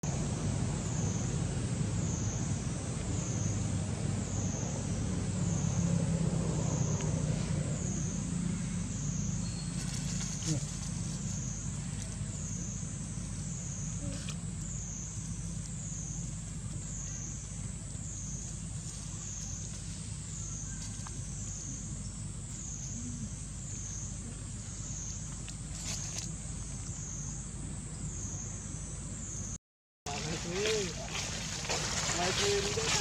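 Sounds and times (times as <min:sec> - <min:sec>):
insects whining: 0:00.0 - 0:33.0
low steady rumble: 0:00.0 - 0:33.0.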